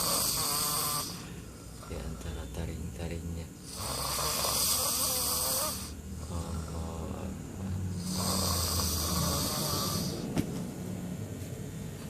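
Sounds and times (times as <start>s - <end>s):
man snoring heavily: 0.0s - 2.2s, 3.6s - 10.4s.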